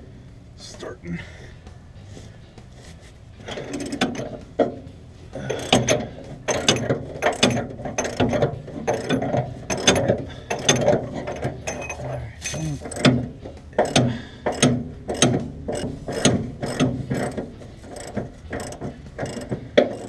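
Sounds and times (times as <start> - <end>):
socket ratchet clicking: 5.5 - 20.0.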